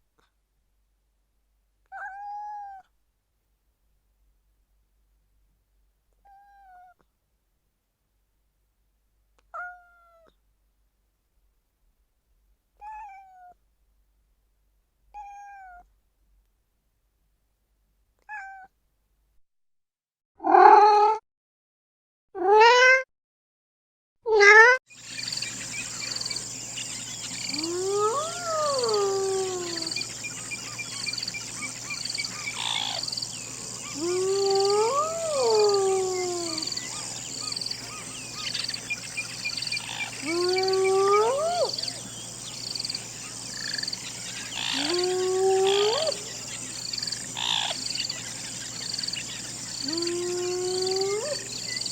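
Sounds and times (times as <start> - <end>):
cat meowing: 12.8 - 13.6, 15.2 - 15.8, 18.3 - 18.7
crickets chirping: 24.9 - 51.9
hyena whoops: 27.5 - 30.1, 33.8 - 37.2, 40.2 - 42.0, 44.6 - 46.3, 49.8 - 51.5.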